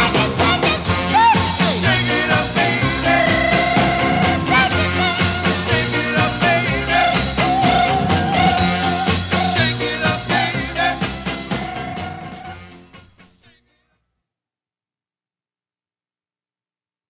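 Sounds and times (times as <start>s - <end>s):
rock and roll record playing: 0.0s - 13.2s.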